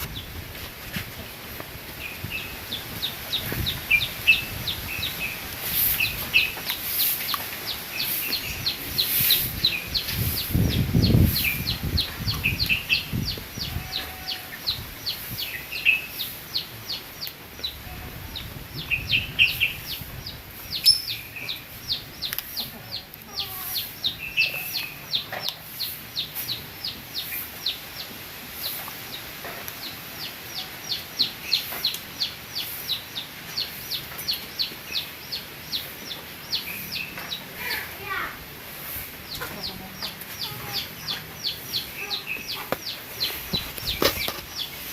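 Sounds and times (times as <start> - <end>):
wind rumbling on microphone: 0.0 - 6.8, 7.9 - 15.6, 17.6 - 22.3, 42.8 - 44.8
small bird chirping: 2.7 - 28.8
chickens clucking: 20.8 - 44.9.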